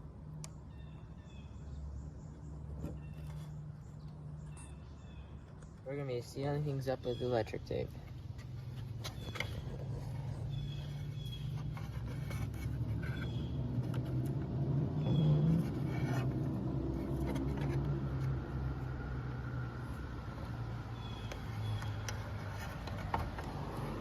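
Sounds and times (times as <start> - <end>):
vehicle engine running: 8.0 - 24.0.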